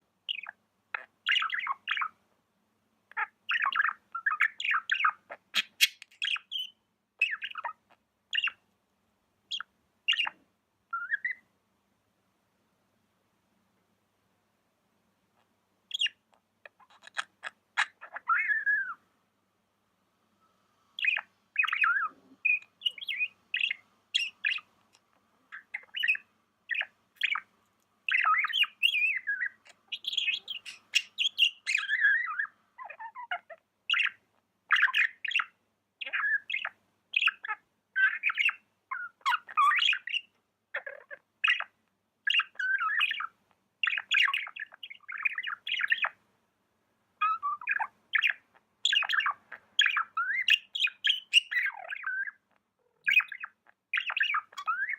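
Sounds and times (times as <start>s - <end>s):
budgerigar chirping: 0.3s - 2.2s, 3.1s - 8.6s, 9.5s - 11.5s, 15.4s - 19.0s, 20.9s - 46.2s, 47.2s - 54.9s.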